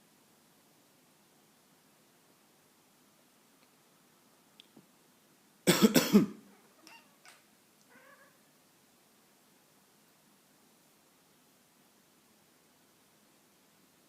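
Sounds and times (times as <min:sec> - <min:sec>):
person coughing: 0:05.7 - 0:06.4
cat meowing: 0:06.6 - 0:08.5.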